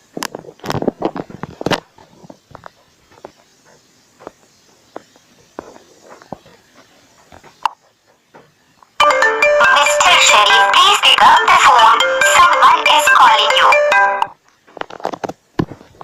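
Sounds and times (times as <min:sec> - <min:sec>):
synthesized phone ringtone: 0:09.0 - 0:14.3.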